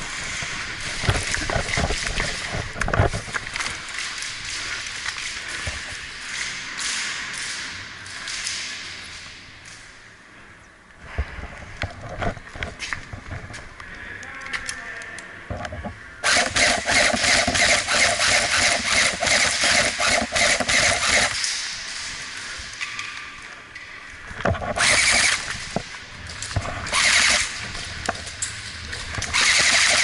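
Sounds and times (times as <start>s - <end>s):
gearbox whir: 16.2s - 21.4s, 24.7s - 25.6s, 26.9s - 27.6s, 29.2s - 30.0s
airsoft guns firing full auto: 16.2s - 21.5s, 24.8s - 25.6s, 26.9s - 27.6s, 29.3s - 30.0s.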